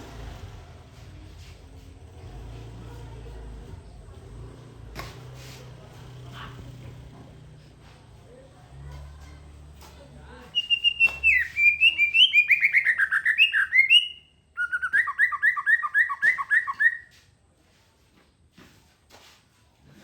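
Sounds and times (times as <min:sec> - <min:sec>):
songbird singing: 0:10.4 - 0:17.2.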